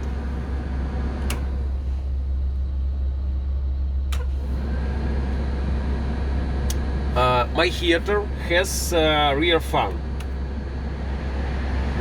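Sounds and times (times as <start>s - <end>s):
bus engine idling: 0.0s - 12.0s
dashboard switch clicks: 1.2s - 1.6s, 4.1s - 4.4s, 10.2s - 10.4s.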